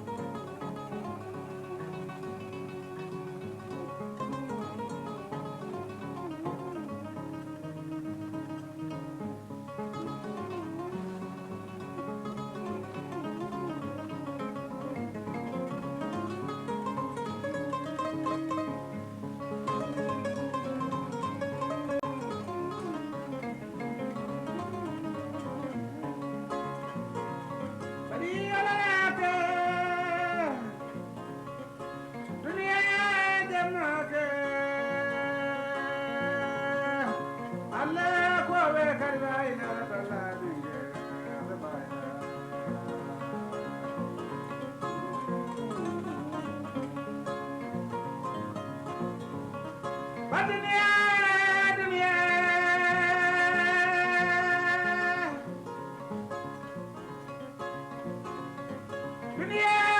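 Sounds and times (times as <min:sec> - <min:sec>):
kora strings plucked: 0:00.0 - 0:59.9
man singing: 0:10.0 - 0:25.8, 0:27.4 - 0:31.4, 0:32.2 - 0:45.1, 0:49.8 - 0:56.1, 0:59.2 - 0:59.9.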